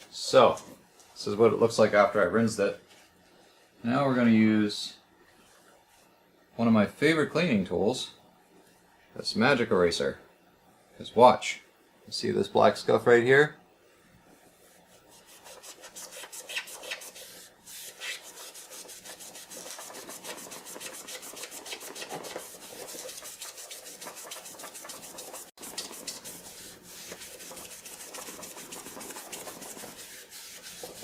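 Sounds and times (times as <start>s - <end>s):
foam eraser scrubbing plastic: 14.6s - 31.0s.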